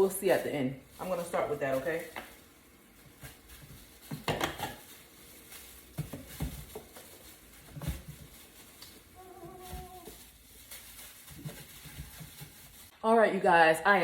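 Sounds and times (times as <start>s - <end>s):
kitchenware knocking and clattering: 4.1s - 4.9s.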